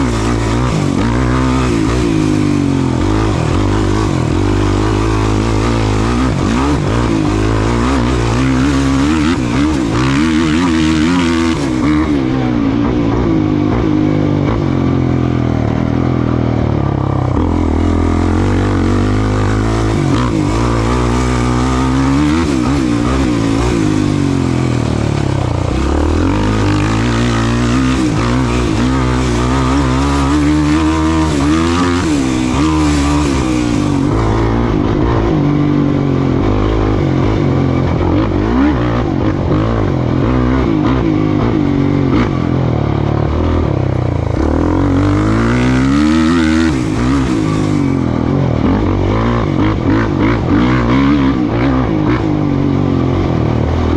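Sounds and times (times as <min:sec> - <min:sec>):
racing engine revving: 0:00.0 - 0:53.9.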